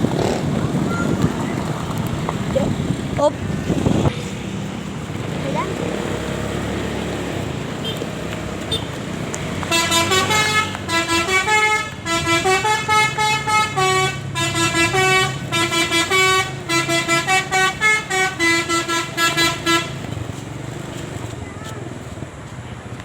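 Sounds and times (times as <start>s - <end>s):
bus engine humming: 0.0s - 23.0s
multi-note air horn melody: 9.7s - 20.0s.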